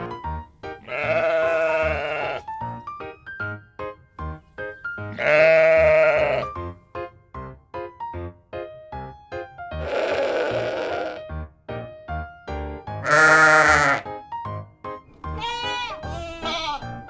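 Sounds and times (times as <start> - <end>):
sheep bleating: 0.8 - 2.6, 5.1 - 6.5, 9.8 - 11.2, 13.0 - 14.1, 15.3 - 17.0
plucked children's music: 11.1 - 17.0.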